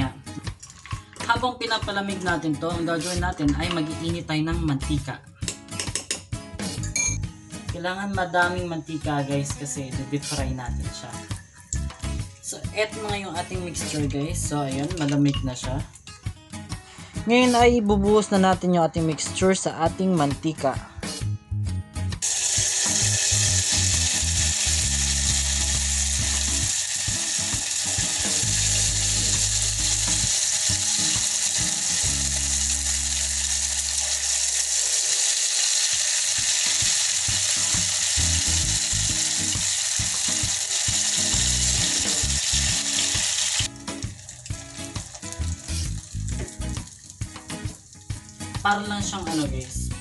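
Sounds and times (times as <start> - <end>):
background music with low notes: 0.0 - 34.8, 36.3 - 50.0
batter deep-frying in oil: 22.2 - 49.7.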